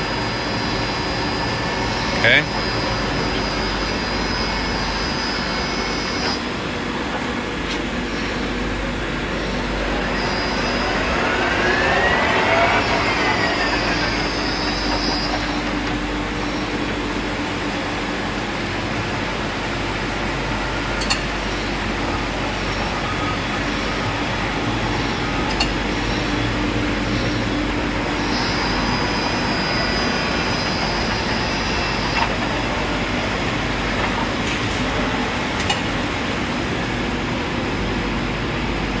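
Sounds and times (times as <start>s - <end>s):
metal lathe running: 0.0s - 36.7s
high steady tone: 8.0s - 17.7s.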